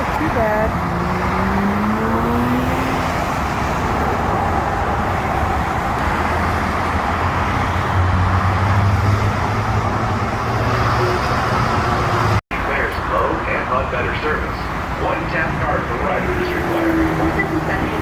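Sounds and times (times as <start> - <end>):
vehicle engine revving: 0.0 - 12.4
freeway traffic noise: 0.0 - 18.0.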